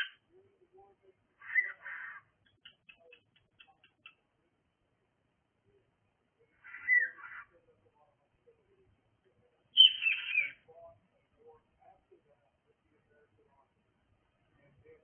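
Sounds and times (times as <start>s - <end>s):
cockatiel screechy calls: 1.4s - 2.2s, 6.6s - 7.5s, 9.8s - 10.6s.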